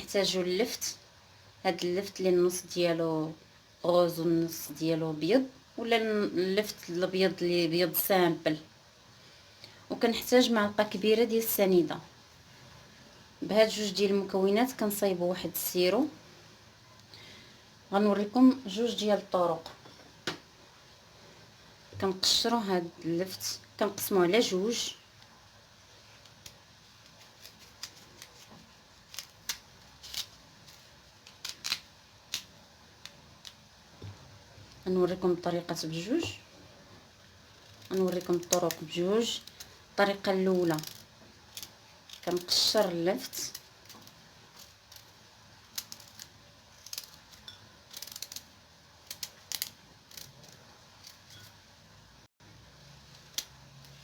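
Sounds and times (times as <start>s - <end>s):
knife peeling a turnip: 26.2s - 33.7s, 37.4s - 51.5s.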